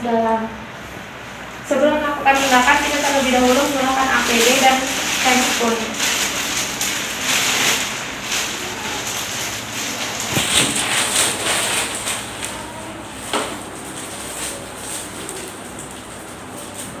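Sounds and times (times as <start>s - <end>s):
disposable gloves pulled on: 2.4s - 12.4s
protective equipment rustling: 2.4s - 12.5s.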